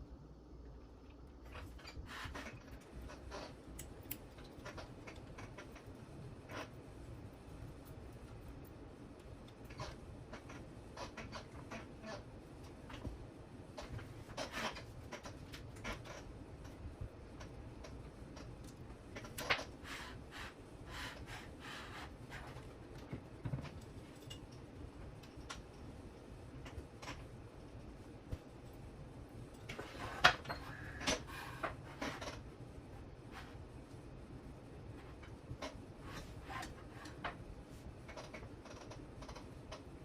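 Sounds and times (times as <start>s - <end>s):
light clicks of small parts: 2.8s - 6.0s.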